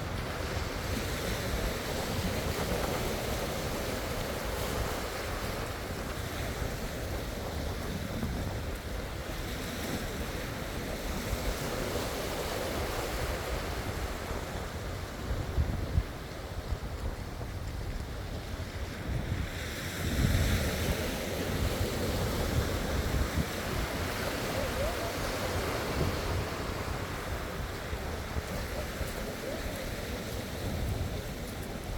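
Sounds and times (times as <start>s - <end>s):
sea waves washing: 0.0s - 31.9s
wind buffeting microphone: 0.0s - 31.9s.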